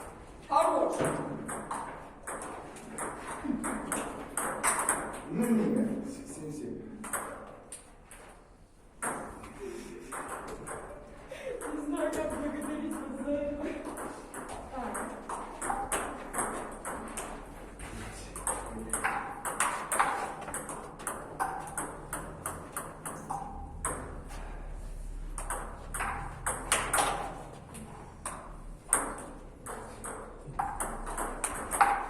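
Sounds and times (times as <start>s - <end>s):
ball bouncing on table: 1.0s - 5.2s, 7.0s - 7.8s, 13.8s - 17.5s, 18.3s - 24.3s, 25.3s - 32.0s
ping pong ball clicking off paddles: 1.0s - 5.6s, 7.0s - 8.0s, 9.0s - 9.5s, 10.1s - 13.2s, 13.8s - 24.4s, 25.2s - 32.0s.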